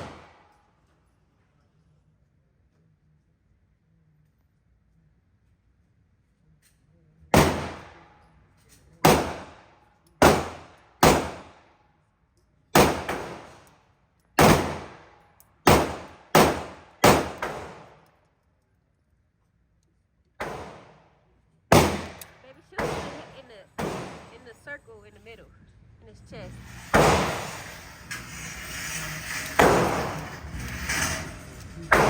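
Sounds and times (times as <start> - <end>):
gunshots with ringing echo: 7.4 - 8.1, 9.0 - 9.6, 10.2 - 11.6, 12.8 - 13.6, 14.4 - 15.1, 15.7 - 18.0, 20.4 - 21.0, 21.7 - 24.4.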